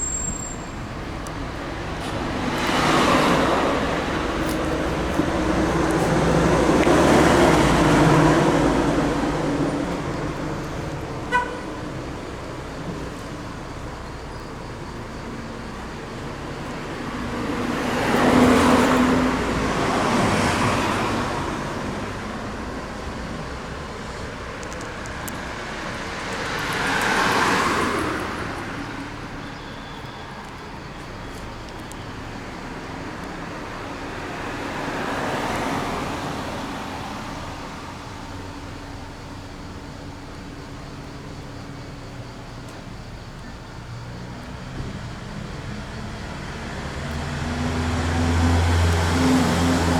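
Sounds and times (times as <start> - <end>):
steady traffic noise: 0.0 - 49.9
road vehicle passing by: 0.8 - 38.3, 43.6 - 49.9
vehicle passing by: 1.8 - 10.5, 45.0 - 49.9.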